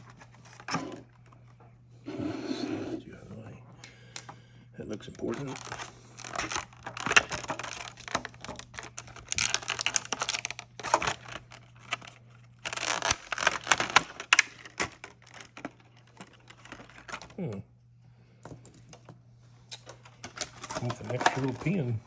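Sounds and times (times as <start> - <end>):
packaging crinkling and tearing: 4.9 - 17.6, 19.7 - 22.0.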